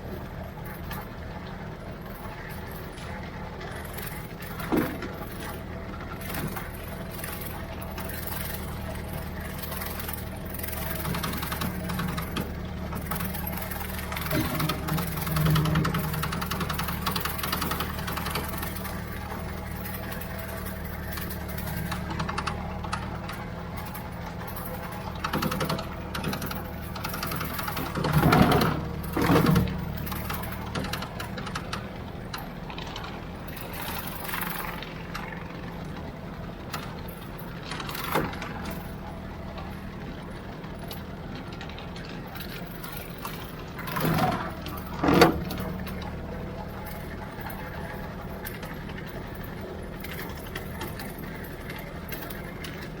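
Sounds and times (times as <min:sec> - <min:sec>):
rotary mower: 0:00.0 - 0:53.0
tractor engine under load: 0:00.0 - 0:53.0.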